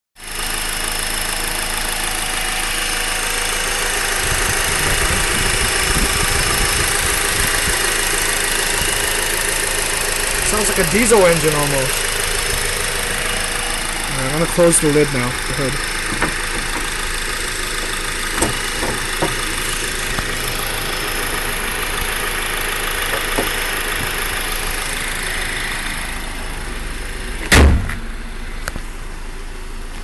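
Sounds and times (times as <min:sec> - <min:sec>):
car engine idling with ticking: 0:00.2 - 0:30.0
car hood slamming shut: 0:16.0 - 0:17.0, 0:18.3 - 0:19.6, 0:23.1 - 0:24.2, 0:27.4 - 0:28.2.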